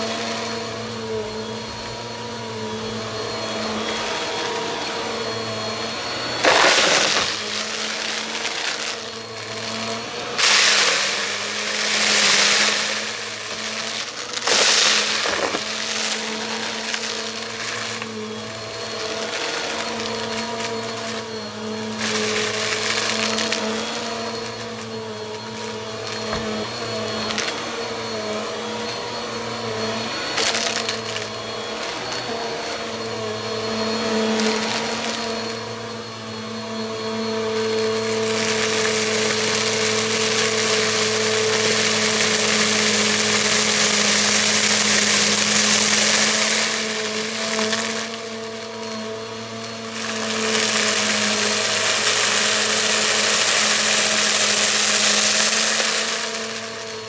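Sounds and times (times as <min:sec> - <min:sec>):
vacuum airflow rushing: 0:00.0 - 0:37.0
vacuum cleaner motor hum: 0:00.0 - 0:57.0.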